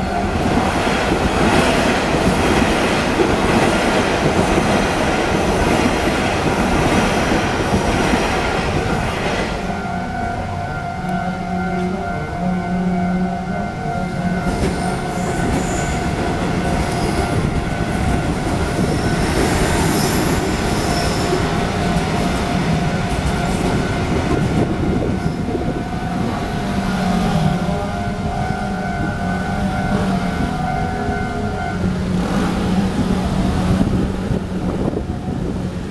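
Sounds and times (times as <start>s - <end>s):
train wheels rumbling and squealing: 0.0s - 35.9s
level crossing warning signal: 8.5s - 33.7s.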